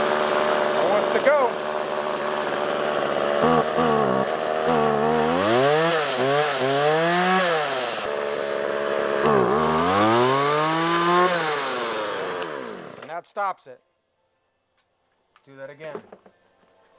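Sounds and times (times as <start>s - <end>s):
chainsaw revving: 0.0s - 13.1s.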